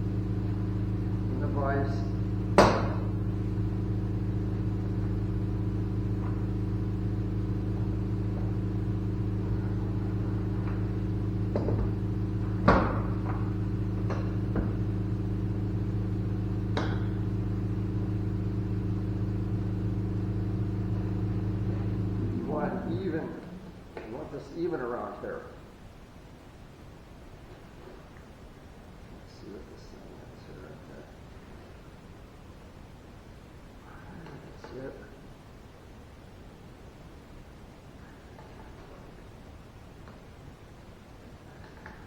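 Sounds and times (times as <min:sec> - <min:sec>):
shop machinery humming: 0:00.0 - 0:24.2.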